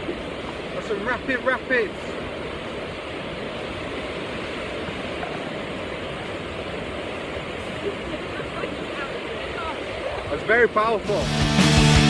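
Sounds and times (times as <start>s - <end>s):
waterfall roaring: 0.0s - 12.0s.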